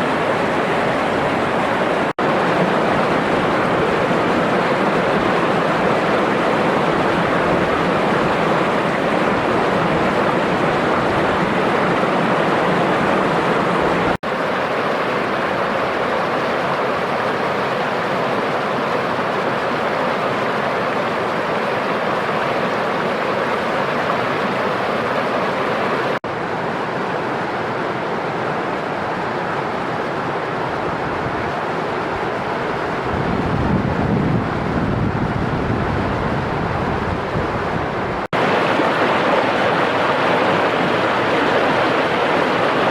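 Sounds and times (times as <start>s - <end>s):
waterfall rushing: 0.0s - 33.4s, 36.1s - 42.9s
wind buffeting microphone: 30.7s - 42.9s.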